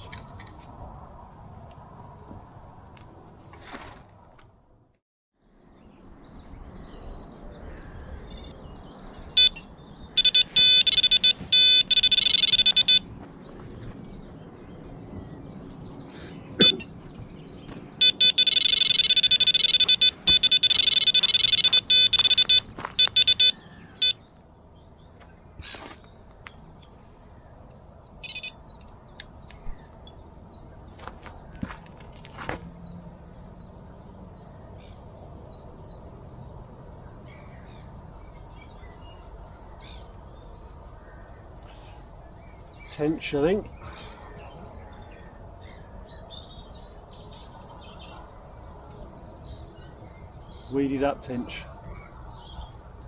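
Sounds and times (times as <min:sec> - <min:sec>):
electronic bite alarm beeping: 0:08.3 - 0:08.5, 0:09.4 - 0:09.6, 0:10.2 - 0:13.1, 0:18.0 - 0:24.2
sharp click: 0:08.3 - 0:08.5.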